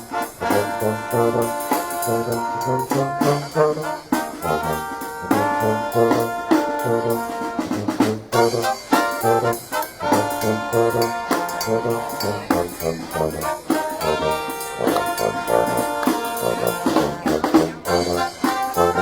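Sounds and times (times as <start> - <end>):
brass band playing: 0.0 - 19.0
drum hits: 12.4 - 16.3.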